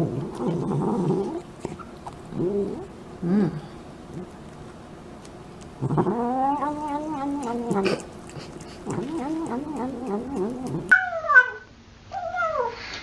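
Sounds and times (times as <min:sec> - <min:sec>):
cat murmuring while eating: 0:00.0 - 0:11.2.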